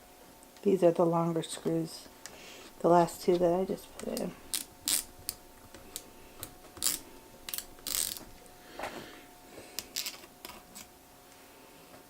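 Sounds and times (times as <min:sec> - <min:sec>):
small screwdriver turning screws: 0:06.8 - 0:08.2.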